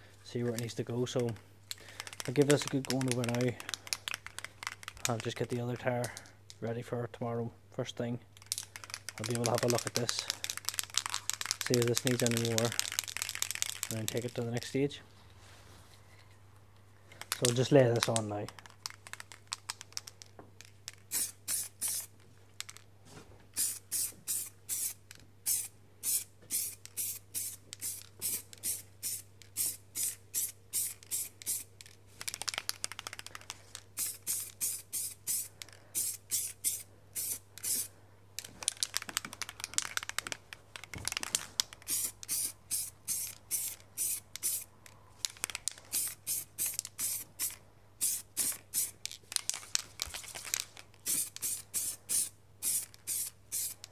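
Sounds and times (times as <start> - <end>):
aerosol can spraying bursts: 23.6 - 31.7, 34.0 - 37.9, 41.9 - 44.7, 45.9 - 48.9, 51.0 - 53.8.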